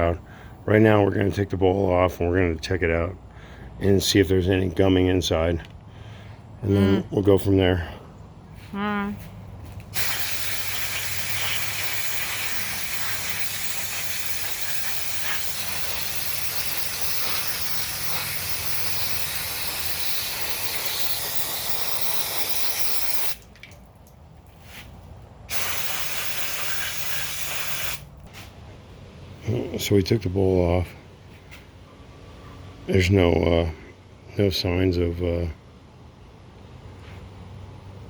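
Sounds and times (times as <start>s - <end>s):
pressurised spray hissing: 9.9s - 23.4s, 25.5s - 28.2s.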